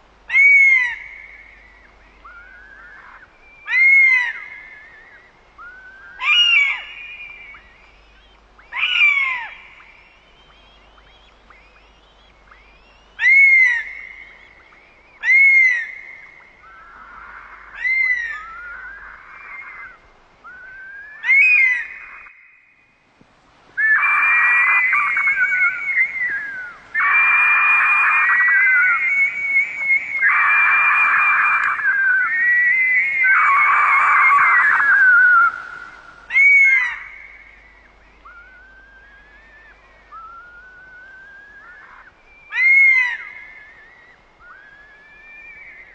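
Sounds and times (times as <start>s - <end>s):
bird of prey screeching: 23.8s - 35.7s, 36.3s - 37.2s.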